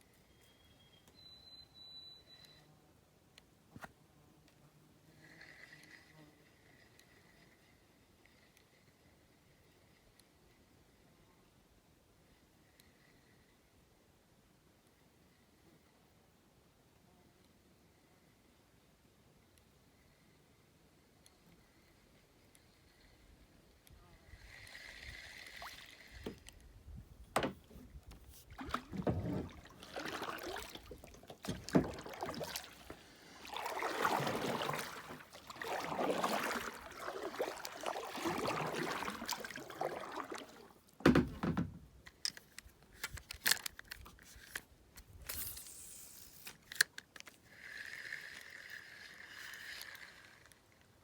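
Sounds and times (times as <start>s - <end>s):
water swishing and splashing: 24.6s - 26.6s, 27.3s - 41.4s.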